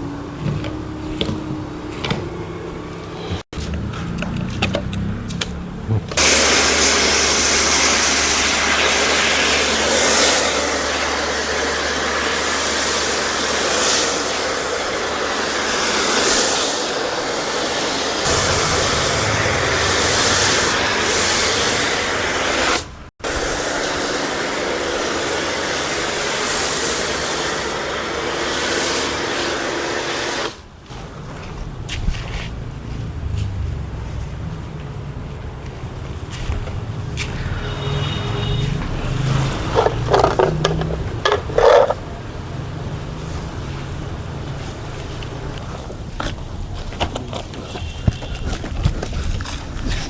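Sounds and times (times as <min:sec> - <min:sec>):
pump motor hum: 0:06.1 - 0:30.6
pressure washer jet hissing: 0:06.2 - 0:30.8, 0:36.6 - 0:45.9.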